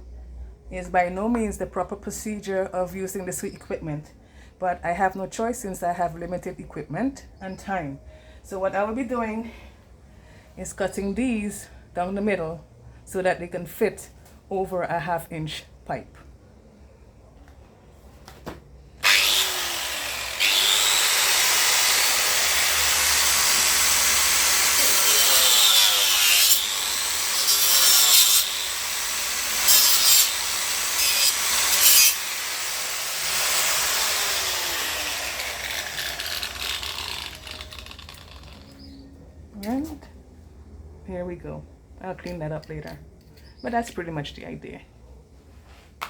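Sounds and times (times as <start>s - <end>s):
angle grinder cutting plastic: 19.0s - 38.7s.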